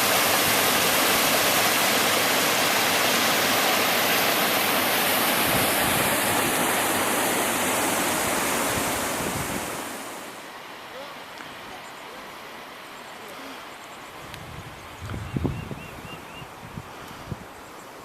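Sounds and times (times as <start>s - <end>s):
waterfall rushing: 0.0s - 13.8s.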